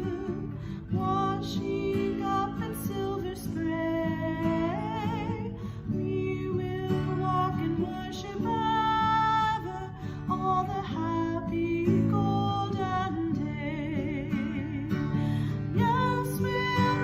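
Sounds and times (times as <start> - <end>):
plucked acoustic guitar: 0.0 - 17.0.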